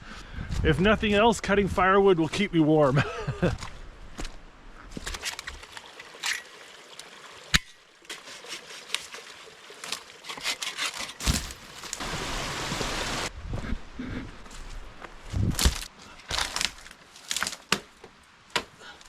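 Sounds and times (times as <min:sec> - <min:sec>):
wood cracking: 0:10.4 - 0:12.2, 0:15.5 - 0:18.7.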